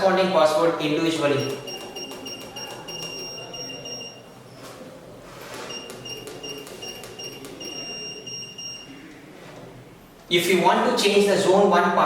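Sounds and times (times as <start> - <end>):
alarm keypad buzzer beeping: 1.3 - 4.3, 5.6 - 9.0
keypad keys clicking: 1.4 - 4.1, 5.7 - 8.0.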